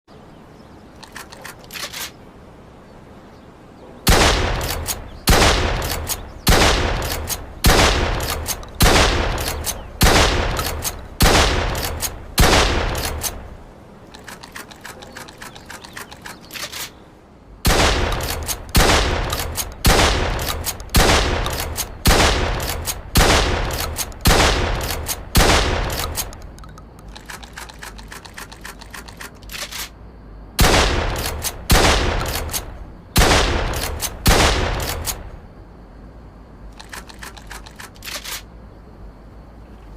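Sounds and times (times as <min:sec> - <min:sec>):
faint clicks: 0:00.9 - 0:02.2, 0:14.0 - 0:17.0, 0:25.9 - 0:30.0, 0:36.7 - 0:38.5
shotgun shots ringing: 0:04.1 - 0:13.5, 0:17.7 - 0:26.4, 0:30.6 - 0:35.3.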